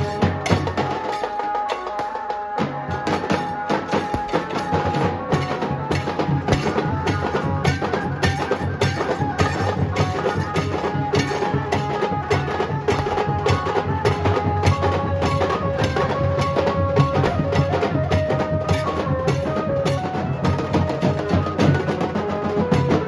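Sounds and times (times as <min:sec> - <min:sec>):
heavy drums: 0:00.0 - 0:23.0
sharp drum strokes: 0:00.0 - 0:23.0.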